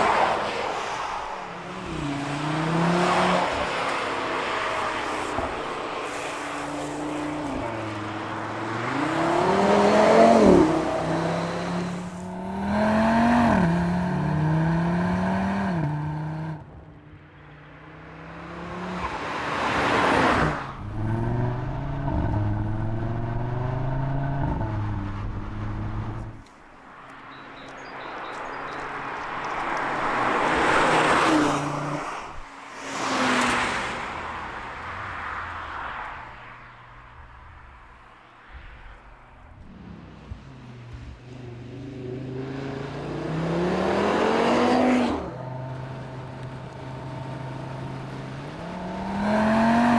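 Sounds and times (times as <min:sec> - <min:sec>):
car engine accelerating hard: 0:01.8 - 0:16.7, 0:41.6 - 0:49.9.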